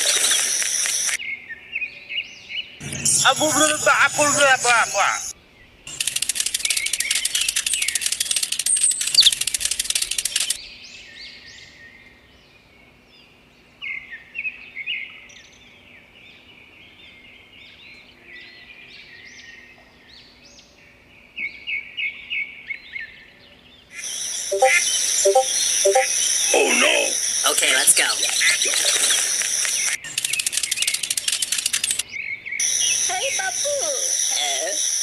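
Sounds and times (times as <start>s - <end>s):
birds chirping: 0.0s - 1.2s, 2.4s - 10.9s, 23.8s - 35.0s
faint steady hum: 24.0s - 30.1s, 32.6s - 35.0s.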